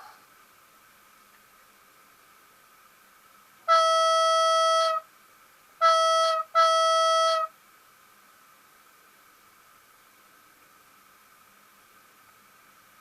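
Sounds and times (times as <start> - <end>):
diesel locomotive horn blasts: 3.6 - 5.1, 5.8 - 7.6.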